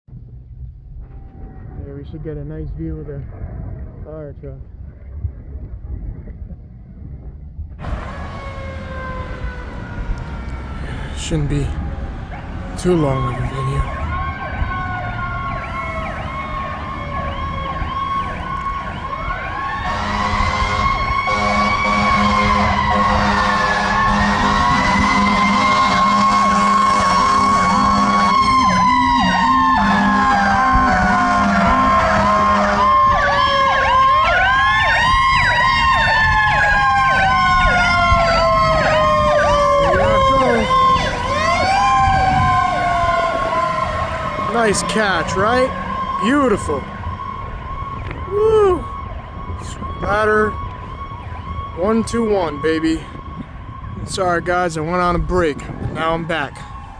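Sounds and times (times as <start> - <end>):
slow wailing siren: 1.0 - 2.2, 7.8 - 56.9
fast yelping siren: 11.9 - 54.4
fire truck horn: 15.4 - 46.8.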